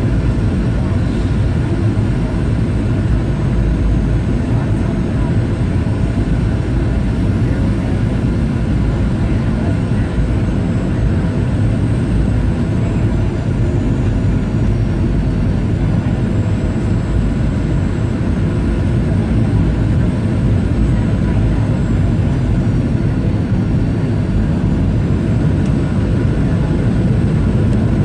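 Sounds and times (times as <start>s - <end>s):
airliner cabin engine roar: 0.0s - 28.0s.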